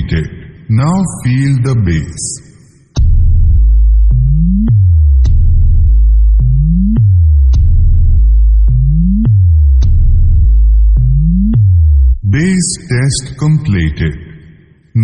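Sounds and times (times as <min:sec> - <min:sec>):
deep synth bass sweeps: 0:03.0 - 0:12.6.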